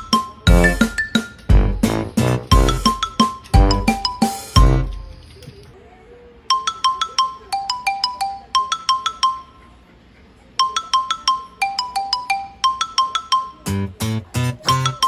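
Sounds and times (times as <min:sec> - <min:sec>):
bright mallet melody: 0:00.0 - 0:04.9.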